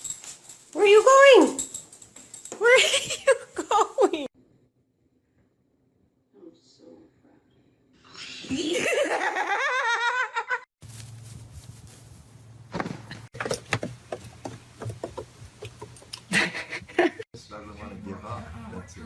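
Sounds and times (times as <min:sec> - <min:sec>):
scattered clicks and knocks: 0:12.8 - 0:16.3.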